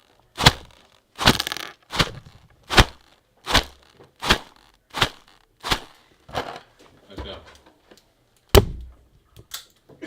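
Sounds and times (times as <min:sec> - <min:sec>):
long crunch: 0:00.0 - 0:06.1
sharp cracks: 0:00.0 - 0:06.1.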